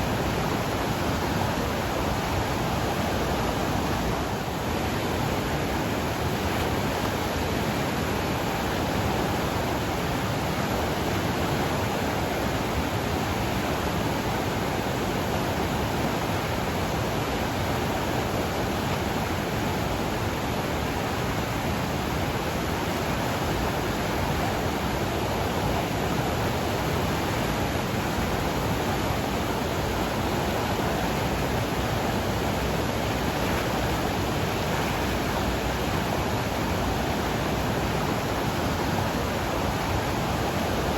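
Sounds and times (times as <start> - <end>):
river rushing: 0.0 - 40.9.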